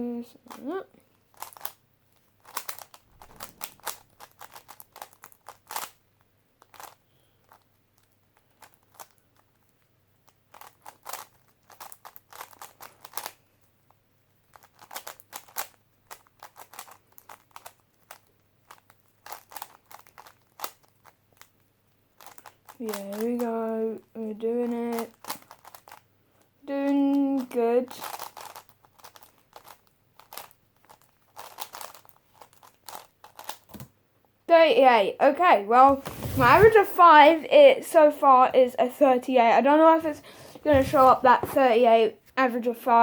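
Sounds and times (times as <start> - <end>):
puzzle cube plastic clicking: 1.4 - 1.8, 2.4 - 6.0, 6.6 - 9.5, 10.2 - 13.4, 14.5 - 21.6, 22.2 - 23.5, 24.6 - 26.1, 26.8 - 33.9.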